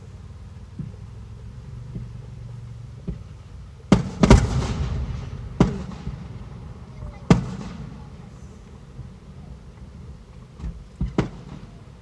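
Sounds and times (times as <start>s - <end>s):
fireworks bursting: 3.0s - 12.0s.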